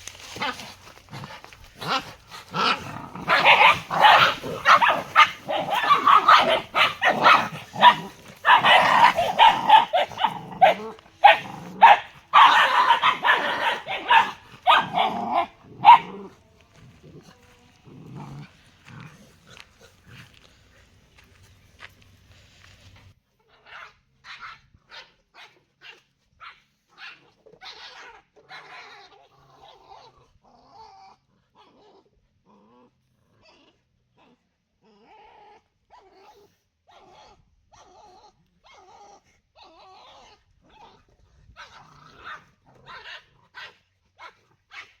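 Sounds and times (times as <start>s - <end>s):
dogs growling: 0.0s - 23.1s, 27.4s - 43.7s
dogs barking: 0.4s - 16.4s.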